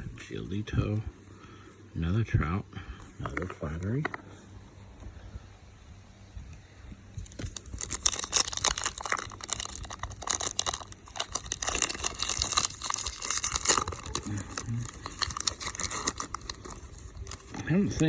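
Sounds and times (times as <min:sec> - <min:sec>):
foil wrapper crinkling and tearing: 0:07.2 - 0:18.0.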